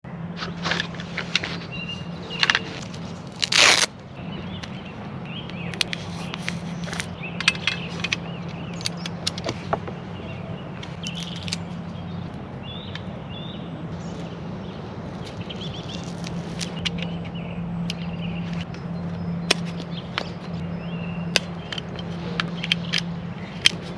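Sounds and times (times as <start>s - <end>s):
small birds chirping: 0.1s - 23.9s
steady low hum: 0.1s - 23.9s
rifle handling clicks and scrapes: 0.4s - 3.9s, 5.8s - 9.8s.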